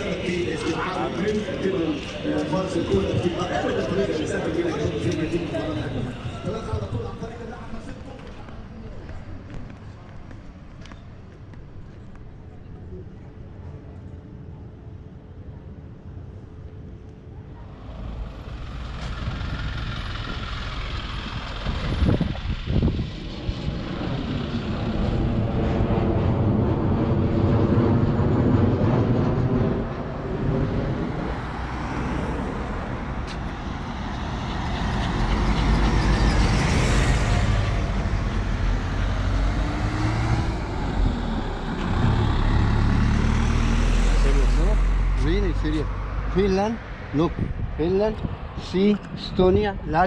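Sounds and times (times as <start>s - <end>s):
street traffic: 0.0s - 50.0s
vehicle engine running nearby: 17.6s - 50.0s.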